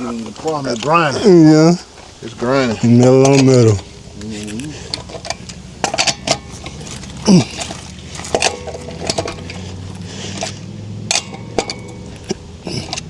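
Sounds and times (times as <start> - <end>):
metal tools clinking: 0.0 - 13.0.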